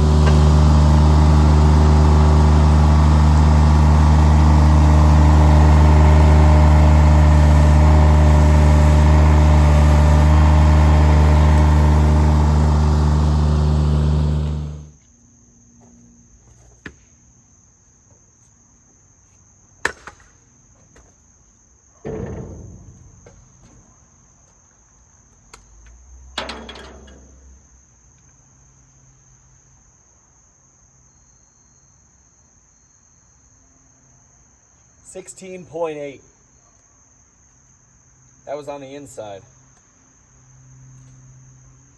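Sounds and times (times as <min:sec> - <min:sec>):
knocks and clunks: 0:00.0 - 0:14.9, 0:22.0 - 0:23.8, 0:26.4 - 0:27.5
engine running steadily: 0:00.0 - 0:15.0
crickets chirping: 0:20.4 - 0:41.9.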